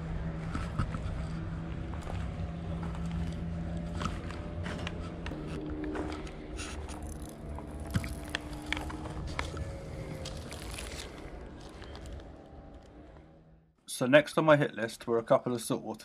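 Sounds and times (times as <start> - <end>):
motor humming: 0.0 - 13.7.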